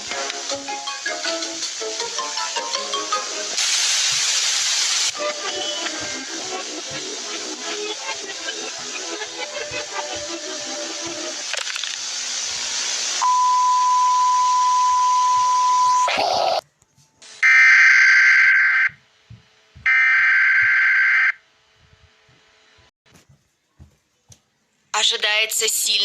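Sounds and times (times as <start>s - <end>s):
television static hiss: 0.0s - 13.2s
steady high beep tone: 13.2s - 16.1s
harsh electronic data bursts: 17.4s - 19.0s, 19.9s - 21.4s.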